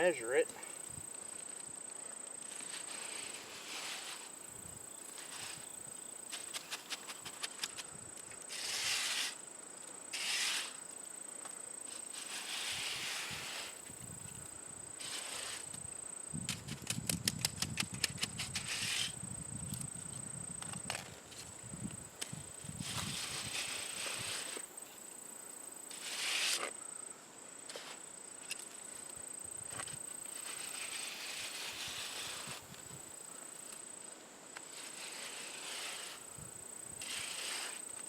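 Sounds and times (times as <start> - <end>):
short scrapes on concrete: 2.4 - 7.9, 8.5 - 9.5, 10.1 - 11.0, 11.8 - 14.4, 15.0 - 19.9, 20.6 - 24.7, 25.9 - 26.8, 27.6 - 29.0, 29.7 - 33.0, 34.6 - 38.0.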